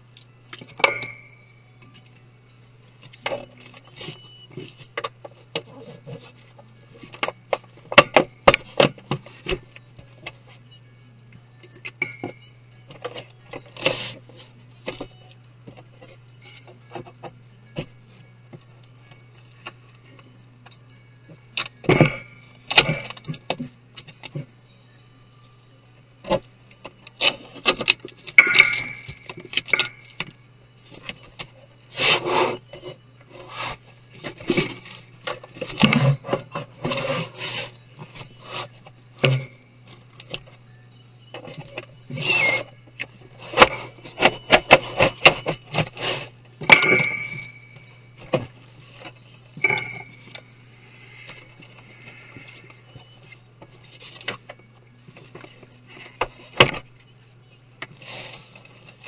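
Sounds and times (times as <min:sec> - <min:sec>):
faint low hum: 0:00.0 - 0:59.0
computer parts clicking and scraping: 0:43.4 - 0:50.5.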